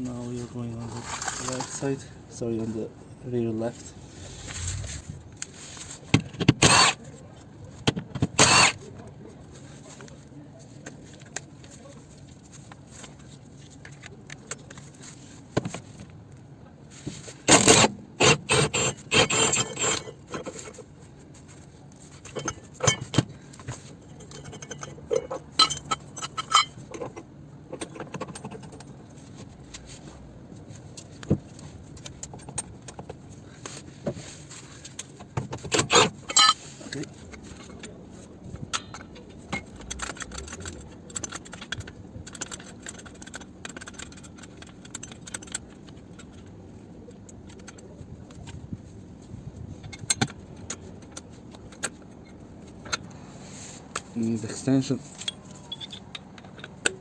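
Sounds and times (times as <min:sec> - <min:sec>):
hand tools clinking on metal: 0:08.4 - 0:08.8, 0:22.2 - 0:23.2, 0:23.8 - 0:29.0, 0:35.7 - 0:37.9, 0:38.7 - 0:46.4, 0:54.6 - 0:57.0.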